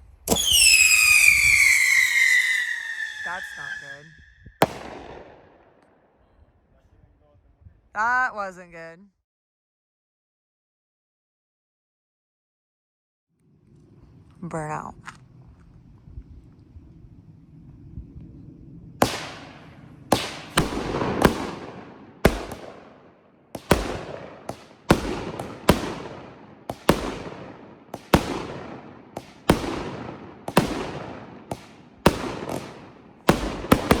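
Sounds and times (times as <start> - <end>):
firework bangs: 0.2 - 5.8, 19.0 - 34.0.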